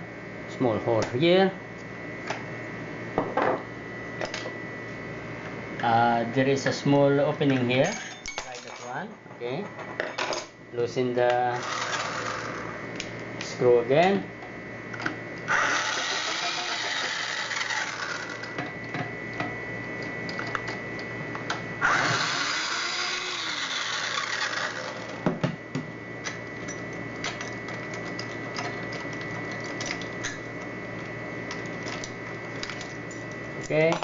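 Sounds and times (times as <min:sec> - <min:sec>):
cordless drill motor: 0:11.6 - 0:12.8, 0:15.5 - 0:18.6, 0:21.8 - 0:25.3.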